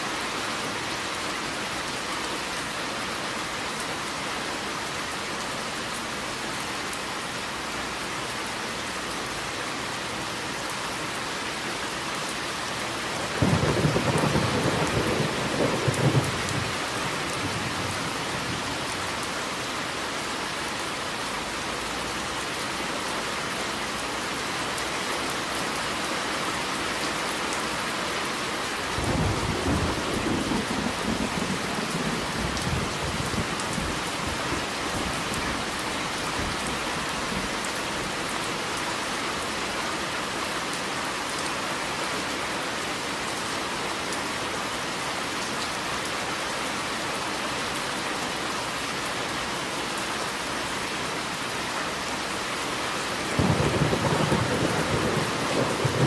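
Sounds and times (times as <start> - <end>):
heavy rain falling: 0.0 - 56.0
thunder rumbling: 13.3 - 18.6, 53.4 - 56.0.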